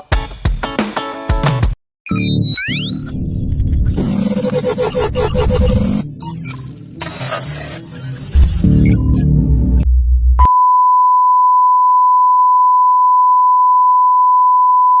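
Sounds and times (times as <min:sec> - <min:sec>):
steady electronic beep tone: 0:02.1 - 0:09.4
bass-heavy music: 0:08.1 - 0:10.5.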